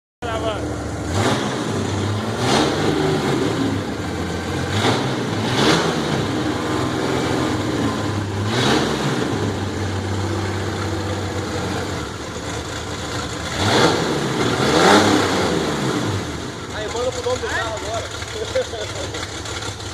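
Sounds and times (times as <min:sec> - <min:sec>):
car engine idling and revving: 0:00.2 - 0:19.9.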